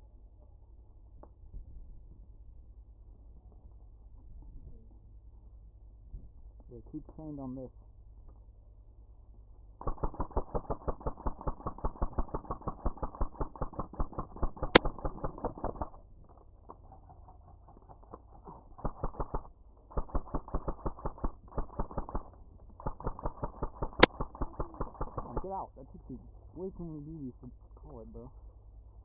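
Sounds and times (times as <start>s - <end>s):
airsoft gun full-auto bursts: 9.8s - 16.0s, 18.8s - 25.6s.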